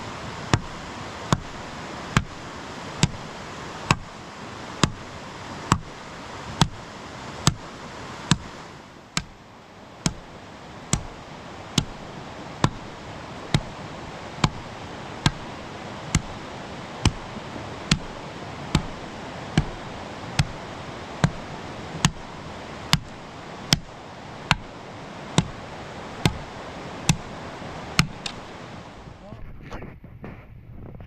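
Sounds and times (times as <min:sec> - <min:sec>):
background hiss: 0:00.0 - 0:31.0
sharp knocks: 0:03.0 - 0:03.2, 0:03.9 - 0:04.1, 0:04.8 - 0:05.0, 0:05.7 - 0:05.9, 0:06.6 - 0:06.8, 0:08.3 - 0:08.5, 0:09.2 - 0:09.4, 0:10.0 - 0:10.3, 0:10.9 - 0:11.2, 0:11.8 - 0:12.0, 0:12.6 - 0:12.9, 0:13.5 - 0:13.8, 0:14.4 - 0:15.4, 0:16.1 - 0:16.4, 0:17.0 - 0:17.3, 0:17.9 - 0:18.1, 0:18.7 - 0:19.8, 0:20.4 - 0:20.6, 0:21.2 - 0:21.4, 0:22.0 - 0:22.3, 0:22.9 - 0:23.1, 0:23.7 - 0:23.9, 0:24.5 - 0:24.7, 0:25.4 - 0:25.6, 0:26.2 - 0:27.3, 0:28.0 - 0:28.4.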